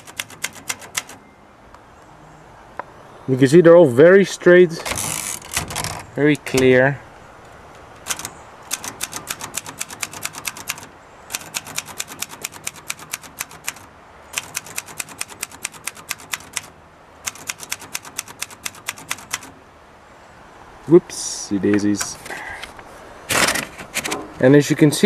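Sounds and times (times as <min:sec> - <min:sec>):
typewriter keystrokes: 0:00.0 - 0:01.2, 0:08.0 - 0:19.6.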